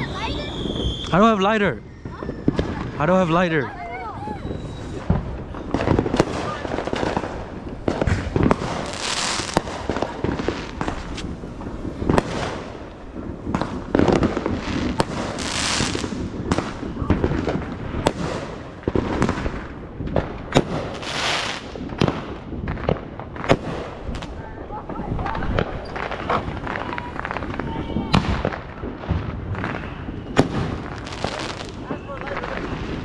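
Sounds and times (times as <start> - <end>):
fireworks hissing: 0.0 - 24.5, 25.5 - 33.0
firecrackers banging: 0.0 - 33.0.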